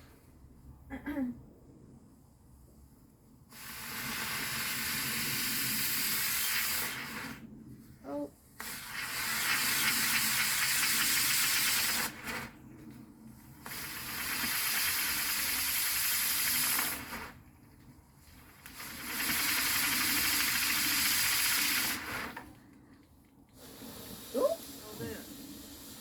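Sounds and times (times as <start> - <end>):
firework hissing: 3.5 - 17.4, 18.3 - 22.5, 23.6 - 26.0.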